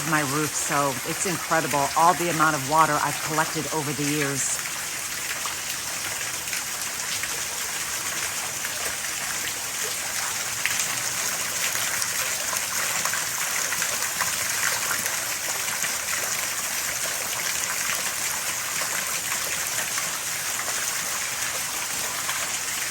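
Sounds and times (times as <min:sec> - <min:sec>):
heavy rain falling: 0:00.0 - 0:05.2
running water rushing: 0:00.0 - 0:22.9.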